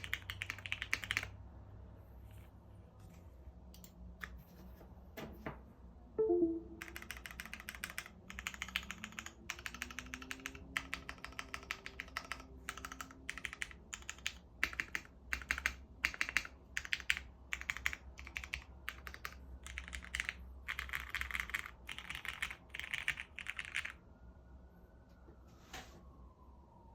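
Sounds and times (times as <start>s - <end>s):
mechanical keyboard typing: 0.0s - 1.4s, 6.4s - 24.0s.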